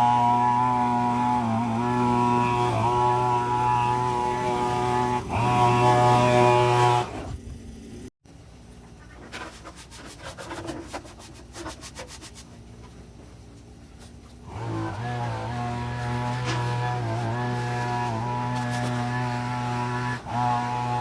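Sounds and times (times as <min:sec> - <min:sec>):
faint rubbing: 0:08.8 - 0:19.2.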